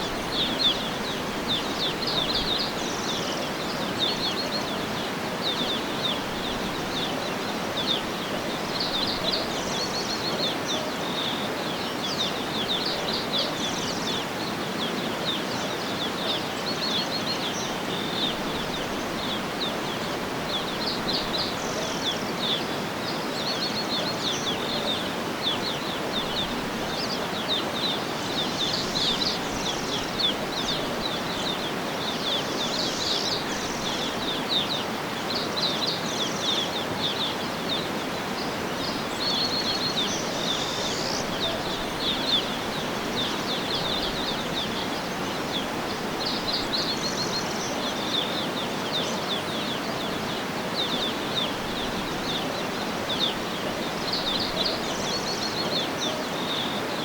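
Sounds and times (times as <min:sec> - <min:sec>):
outdoor ambient hiss: 0:00.0 - 0:57.0
small birds chirping: 0:00.0 - 0:57.0.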